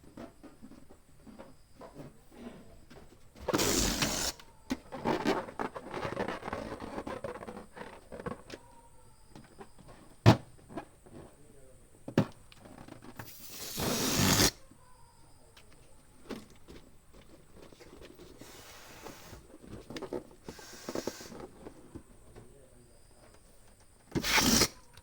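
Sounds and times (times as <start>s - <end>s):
rubbery balloon squeaks: 3.4s - 8.8s, 12.7s - 15.0s, 24.1s - 25.0s
rush of air from hand pump: 3.5s - 4.4s, 13.2s - 14.6s, 18.4s - 19.5s, 20.4s - 21.5s, 24.1s - 24.9s.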